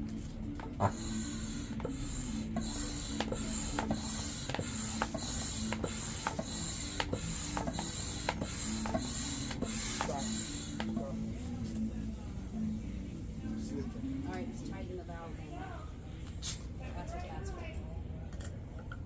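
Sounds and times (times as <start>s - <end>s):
steady low hum: 0.0s - 19.0s
air pump strokes: 0.6s - 11.2s.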